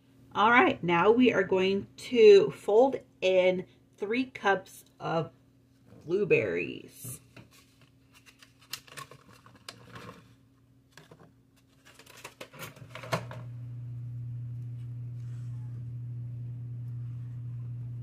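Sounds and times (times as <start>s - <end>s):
steady low hum: 13.3s - 18.0s.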